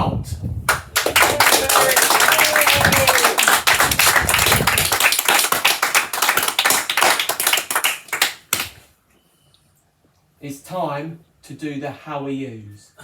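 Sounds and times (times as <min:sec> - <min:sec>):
people clapping: 0:00.7 - 0:08.8.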